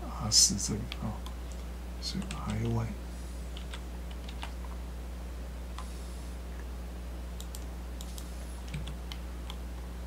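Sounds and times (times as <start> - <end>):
low electrical hum: 0.0 - 10.0
keyboard and mouse clicks: 2.2 - 2.6, 3.6 - 4.6, 7.4 - 9.6.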